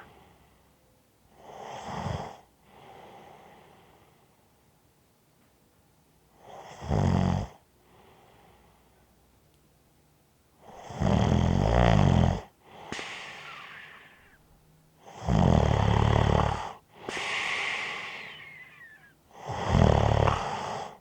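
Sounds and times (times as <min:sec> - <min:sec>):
whistling breath: 0:12.8 - 0:14.4, 0:17.0 - 0:19.2
person snoring: 0:13.0 - 0:14.4, 0:15.1 - 0:21.0.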